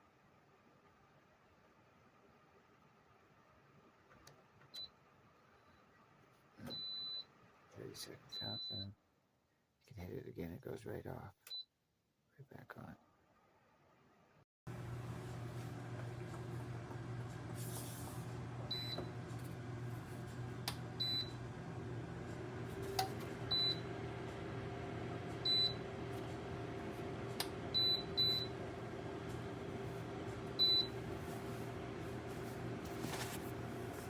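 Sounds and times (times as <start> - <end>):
heater fan humming: 14.7 - 34.0.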